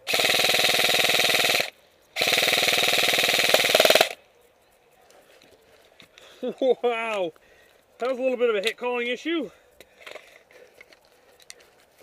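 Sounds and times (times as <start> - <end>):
airsoft gun automatic fire: 0.0 - 4.2.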